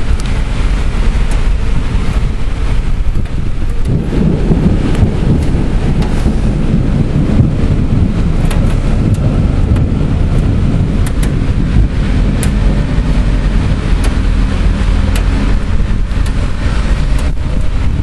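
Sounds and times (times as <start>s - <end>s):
storm wind and rain rushing: 0.0s - 18.0s
wind buffeting microphone: 0.0s - 18.0s.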